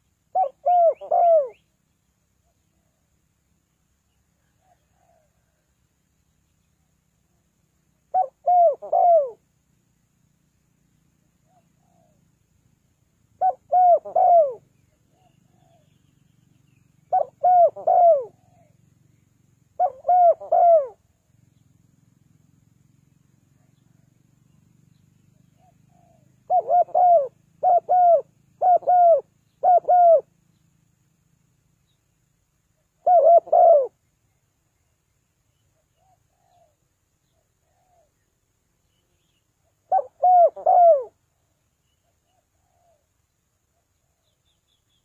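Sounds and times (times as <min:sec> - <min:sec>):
dove cooing: 0:00.3 - 0:01.6, 0:08.1 - 0:09.4, 0:11.4 - 0:12.3, 0:13.4 - 0:16.0, 0:17.0 - 0:18.8, 0:19.8 - 0:21.1, 0:25.3 - 0:30.3, 0:33.0 - 0:34.0, 0:35.8 - 0:38.2, 0:39.7 - 0:41.2, 0:42.0 - 0:43.1.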